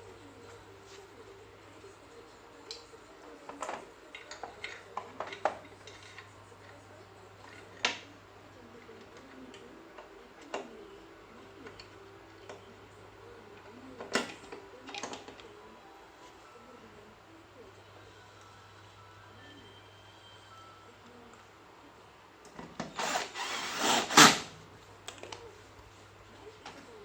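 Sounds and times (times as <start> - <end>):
faint steady hum: 0.0 - 27.0.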